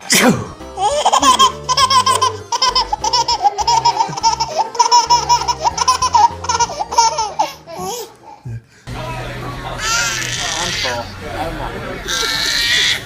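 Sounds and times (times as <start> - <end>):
baby laughing: 0.7 - 8.4.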